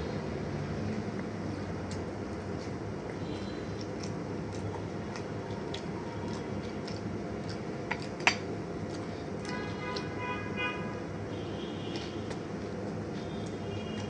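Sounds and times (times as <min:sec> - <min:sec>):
steady background noise: 0:00.0 - 0:14.0
crisp shells bitten and chewed: 0:00.9 - 0:10.1.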